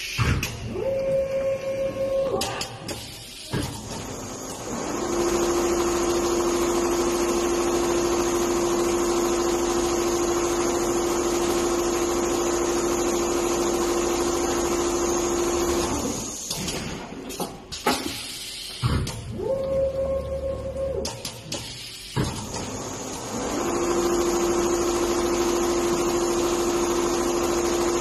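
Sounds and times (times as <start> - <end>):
sewing machine humming: 3.8 - 16.5, 22.4 - 28.0
sewing machine whine: 3.9 - 16.5, 22.4 - 28.0.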